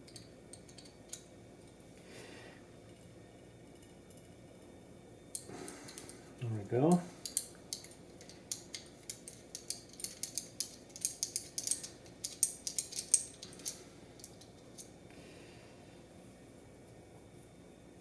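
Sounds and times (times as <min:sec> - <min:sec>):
small tools clicking and tapping: 0:00.0 - 0:01.8, 0:07.2 - 0:14.9.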